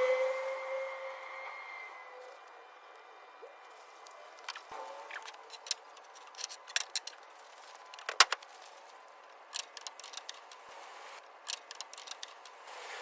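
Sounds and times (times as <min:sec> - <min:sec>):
clicks and knocks: 0:04.4 - 0:07.2, 0:07.8 - 0:08.5, 0:09.5 - 0:10.6, 0:11.4 - 0:12.6.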